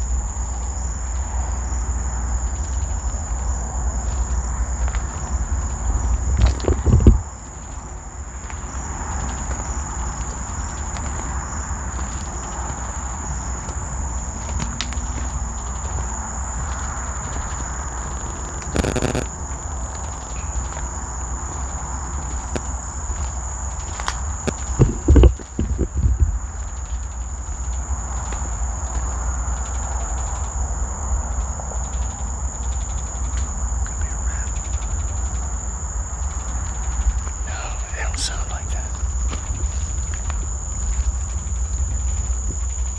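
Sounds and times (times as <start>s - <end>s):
continuous low rumble: 0.0s - 42.9s
crackling and buzzing chorus: 0.0s - 42.9s
faint rapid clicking: 2.2s - 42.9s
high-pitched whine: 18.7s - 19.3s.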